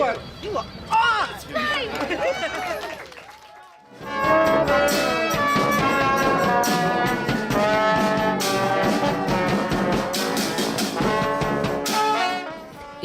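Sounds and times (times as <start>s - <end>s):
brass band playing: 4.0s - 13.0s
drum hits: 4.1s - 12.4s.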